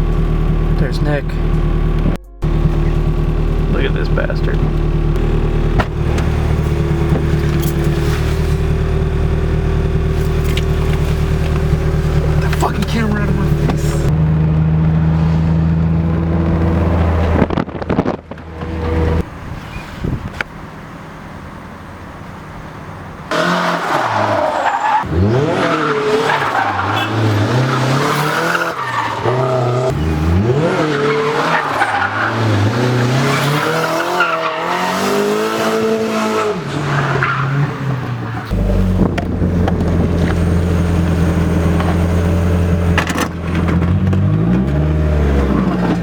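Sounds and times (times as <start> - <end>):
car engine revving: 0.0 - 20.6, 23.2 - 46.0
tyres squealing: 23.3 - 35.3.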